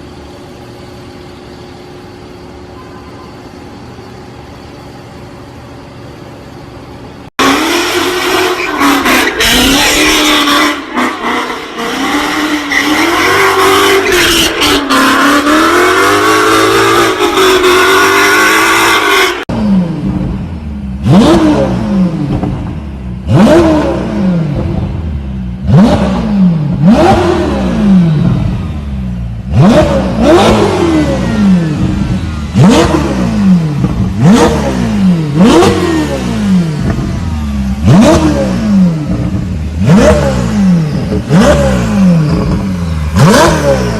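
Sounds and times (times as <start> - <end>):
supercar engine running: 19.5 - 43.9
engine revving in sharp blips: 21.0 - 43.9.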